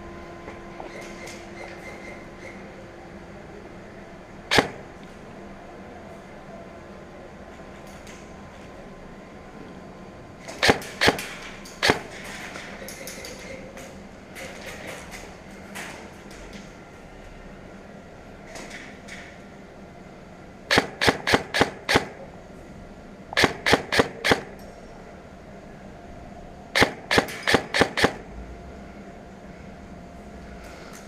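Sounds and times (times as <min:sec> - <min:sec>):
airsoft gun shots: 0:04.5 - 0:04.9, 0:10.6 - 0:12.1, 0:20.7 - 0:22.2, 0:23.4 - 0:24.5, 0:26.8 - 0:28.2.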